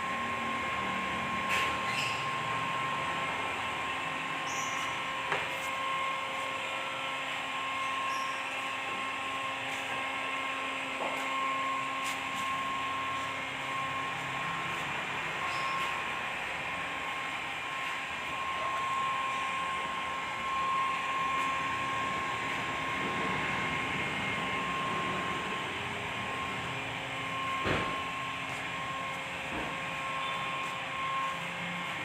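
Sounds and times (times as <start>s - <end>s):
small blower whirring: 0.0s - 32.0s.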